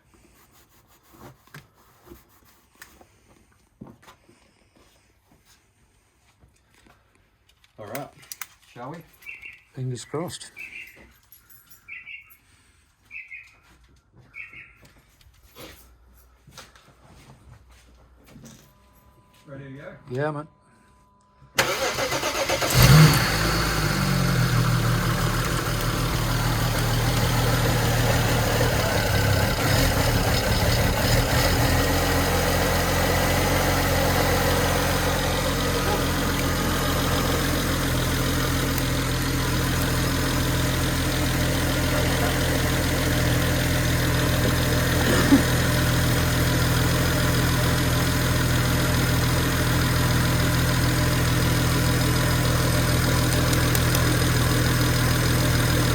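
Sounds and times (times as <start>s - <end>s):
car engine cranking and idling: 21.6s - 55.9s.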